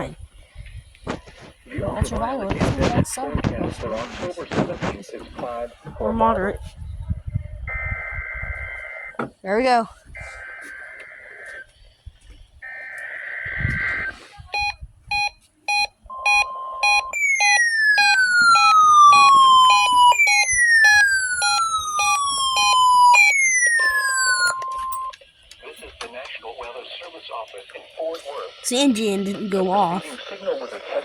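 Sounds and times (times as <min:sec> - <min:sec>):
rapid short alarm beeps: 0:14.6 - 0:25.1
steady alarm tone: 0:14.6 - 0:25.1
falling siren-like sweeps: 0:16.2 - 0:25.1.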